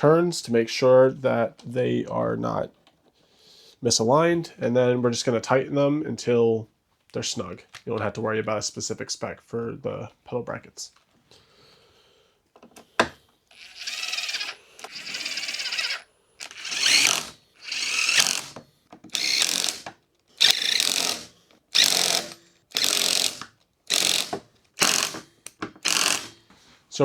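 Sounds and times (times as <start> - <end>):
hand ratchet clicking: 13.5 - 26.4.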